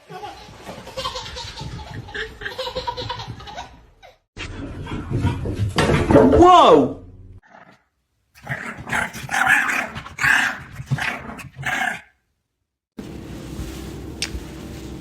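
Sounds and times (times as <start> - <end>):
dog growling and barking: 8.4 - 12.1.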